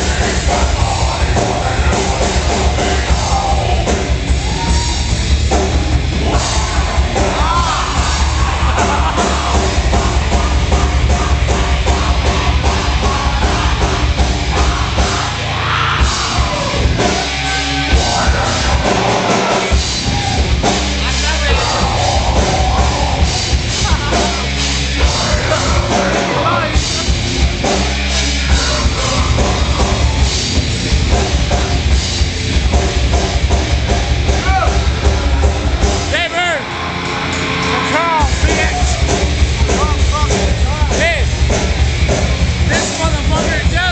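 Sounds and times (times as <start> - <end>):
shouted vocals: 0.0 - 5.3, 6.2 - 30.4, 37.4 - 41.3
bar crowd noise: 0.0 - 43.9
heavy rock music: 0.0 - 43.9.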